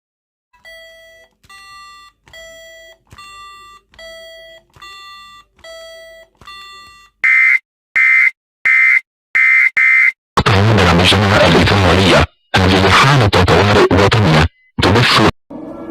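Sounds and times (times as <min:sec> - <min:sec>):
harsh buzzing alarm beeps: 0:00.6 - 0:10.2.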